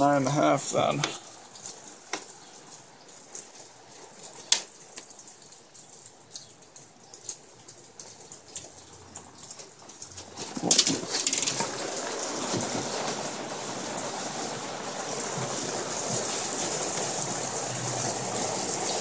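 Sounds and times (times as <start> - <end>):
faint clicks and taps on wood: 2.1 - 2.4.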